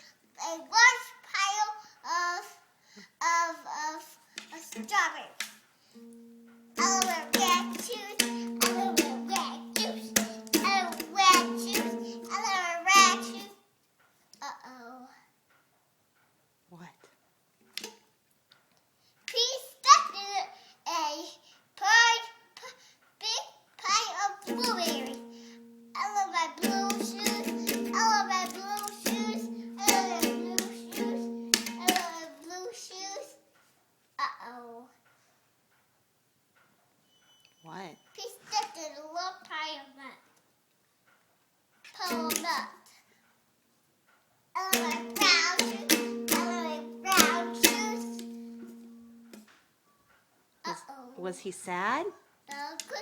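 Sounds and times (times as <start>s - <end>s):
toddler singing: 0.4s - 2.6s, 3.2s - 5.4s, 6.0s - 13.6s, 14.4s - 15.3s, 19.3s - 33.4s, 34.2s - 35.0s, 41.9s - 43.0s, 44.6s - 49.2s, 52.5s - 53.0s
strummed acoustic guitar: 6.0s - 13.5s, 24.0s - 32.3s, 42.0s - 42.7s, 44.6s - 49.4s.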